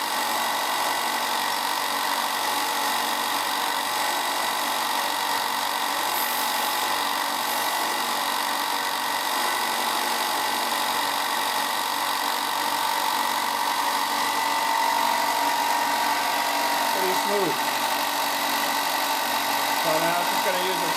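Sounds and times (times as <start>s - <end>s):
sander motor humming with whine: 4.4s - 20.9s
wood sanded against spinning disc: 6.0s - 9.9s, 19.6s - 20.9s.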